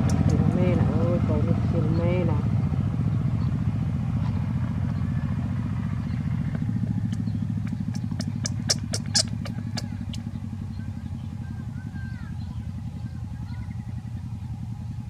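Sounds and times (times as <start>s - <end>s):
sharp clicks: 0.0s - 0.5s, 7.1s - 10.3s
low engine hum: 0.0s - 15.0s.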